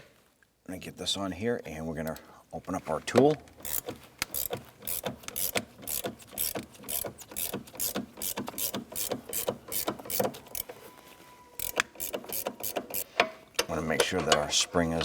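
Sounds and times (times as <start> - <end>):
ratcheting wrench clicking: 3.6 - 10.7, 11.6 - 14.4.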